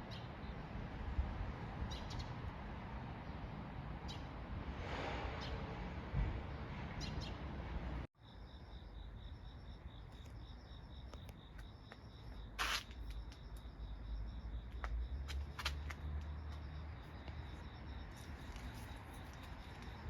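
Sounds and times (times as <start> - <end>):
insects trilling: 8.2 - 20.0.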